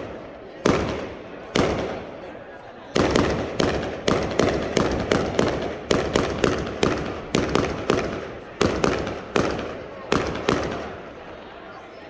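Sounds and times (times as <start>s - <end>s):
fireworks bangs: 0.0s - 2.4s, 3.0s - 11.3s.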